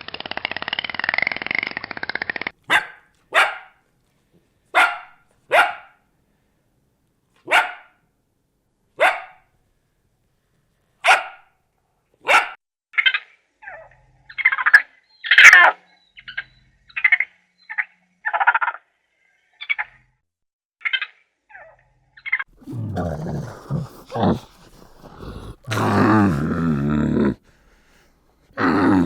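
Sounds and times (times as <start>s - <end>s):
dog barking: 2.7s - 3.8s, 4.7s - 6.0s, 7.4s - 8.0s, 9.0s - 9.4s, 11.0s - 11.5s, 12.2s - 12.6s.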